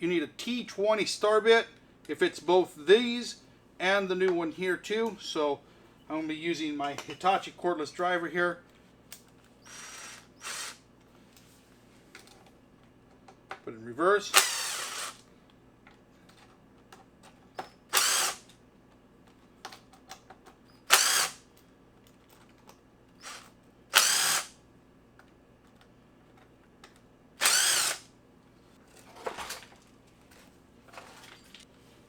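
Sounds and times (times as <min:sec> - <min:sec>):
cordless driver spurts: 0:09.6 - 0:10.8, 0:14.3 - 0:15.2, 0:17.9 - 0:18.5, 0:20.8 - 0:21.4, 0:23.2 - 0:24.5, 0:27.4 - 0:28.1.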